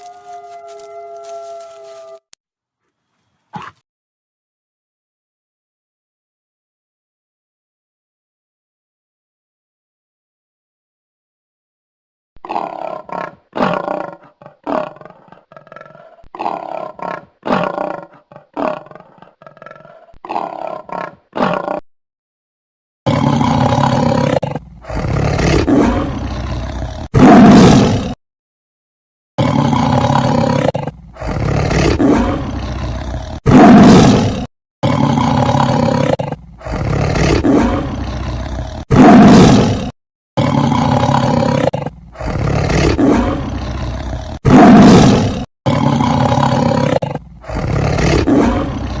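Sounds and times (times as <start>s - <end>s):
big cat roaring: 12.4s - 21.8s, 23.1s - 28.2s, 29.4s - 49.0s.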